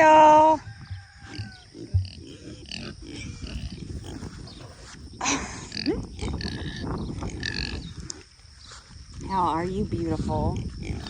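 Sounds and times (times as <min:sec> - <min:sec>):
pigs grunting: 0:01.2 - 0:04.9, 0:05.6 - 0:08.2, 0:10.4 - 0:11.0.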